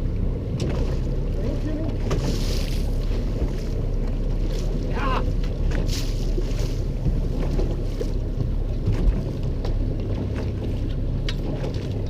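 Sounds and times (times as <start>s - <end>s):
boat motor running: 0.0s - 12.0s.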